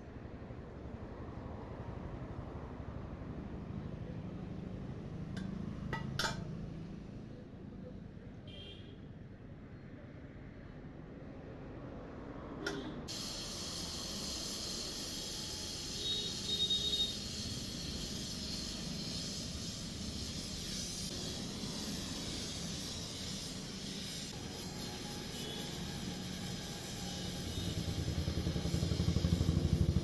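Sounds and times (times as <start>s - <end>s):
torch flame hissing: 13.1s - 29.4s.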